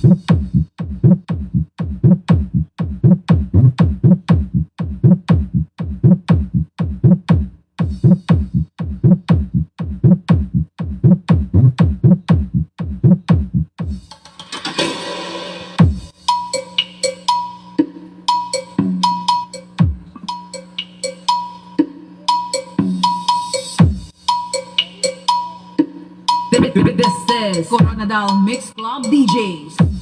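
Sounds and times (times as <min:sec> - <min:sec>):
heavy bass kick drums: 0:00.0 - 0:14.1, 0:15.8 - 0:16.3, 0:19.8 - 0:20.4, 0:23.8 - 0:24.9, 0:26.5 - 0:30.0.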